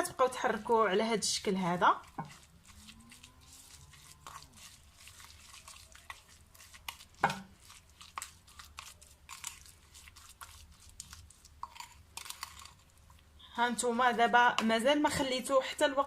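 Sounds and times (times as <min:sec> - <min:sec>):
spoon stirring moist mixture: 0:00.0 - 0:16.0
spoon knocking bowl: 0:07.2 - 0:07.5.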